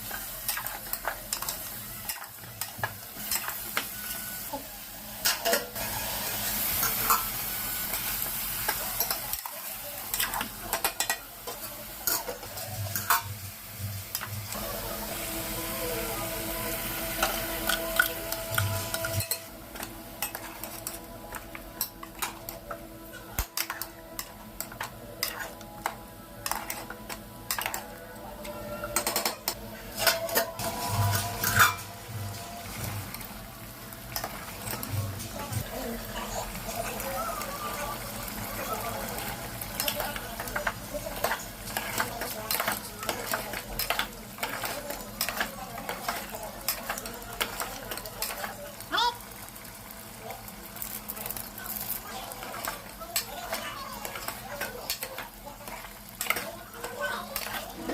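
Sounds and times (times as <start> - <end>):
metal spoon scraping a pan: 0.0 - 4.6, 17.1 - 33.2, 34.1 - 48.6, 50.9 - 57.9
food sizzling in a pan: 0.0 - 57.9.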